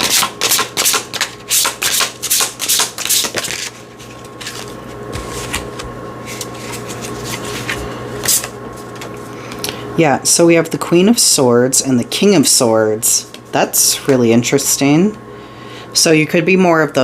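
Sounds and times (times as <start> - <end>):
cards being shuffled: 0.0 - 9.2
cards rustling: 0.0 - 9.2.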